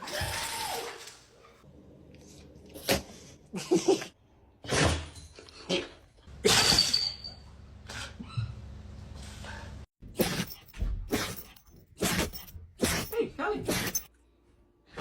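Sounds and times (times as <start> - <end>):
puppy sneezing: 11.1 - 14.1.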